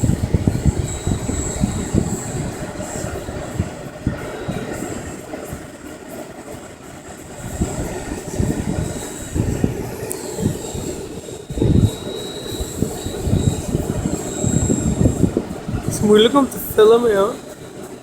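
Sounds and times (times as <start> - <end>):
helicopter rotor whine: 0.0 - 6.2, 7.1 - 18.0
low buffeting rumble: 7.4 - 17.6.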